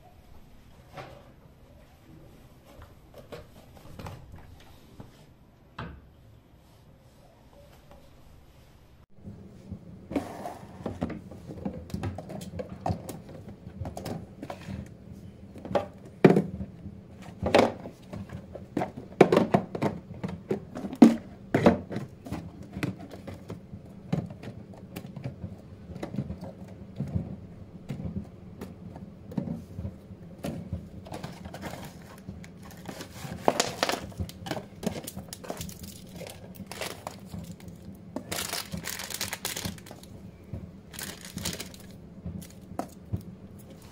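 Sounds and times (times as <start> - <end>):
steady low hum: 8.7 - 43.9
kitchen items clattering: 15.6 - 28.2, 30.4 - 40.2, 40.9 - 43.9.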